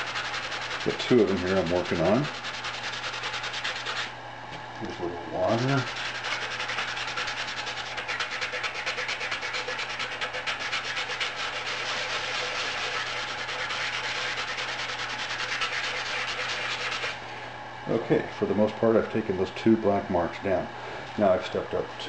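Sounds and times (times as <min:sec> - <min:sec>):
sandpaper rasping on plastic: 0:00.0 - 0:04.1, 0:05.4 - 0:17.2.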